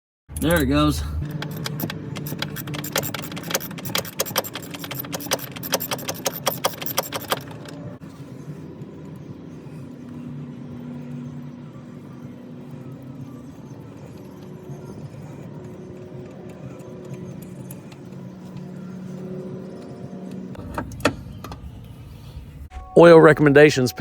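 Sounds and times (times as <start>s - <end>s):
ratchet clicking: 0.3s - 7.8s.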